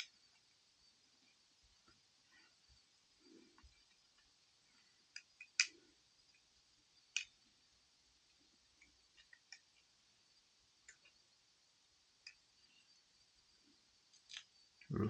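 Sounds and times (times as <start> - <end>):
faint hiss: 0.0 - 15.0.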